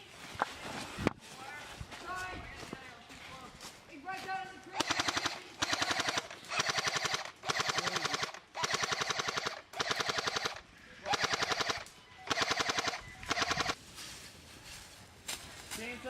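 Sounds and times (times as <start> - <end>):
airsoft rifle firing full auto: 4.8 - 13.8.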